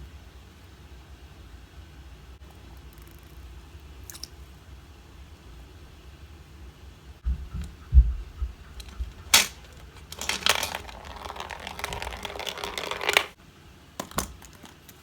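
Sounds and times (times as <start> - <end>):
dull bumps of plastic capsules: 7.3 - 13.4, 14.0 - 15.0
plastic rustling and clicking: 8.7 - 13.4.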